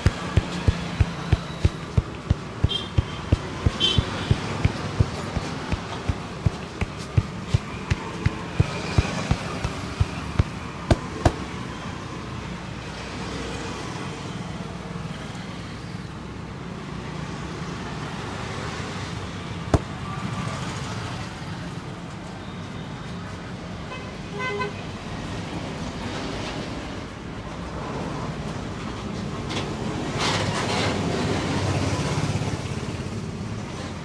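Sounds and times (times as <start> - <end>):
hands slapping head: 0.0 - 11.5
roadside traffic noise: 0.0 - 34.0
vehicle horn toot: 2.6 - 4.3.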